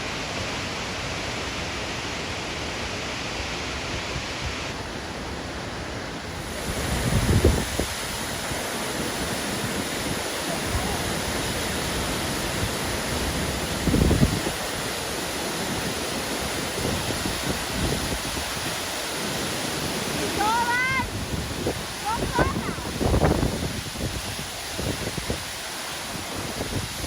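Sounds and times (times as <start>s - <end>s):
waterfall roaring: 0.0s - 27.0s
wind buffeting microphone: 6.4s - 15.0s, 15.6s - 18.9s, 20.1s - 25.5s, 26.1s - 27.0s.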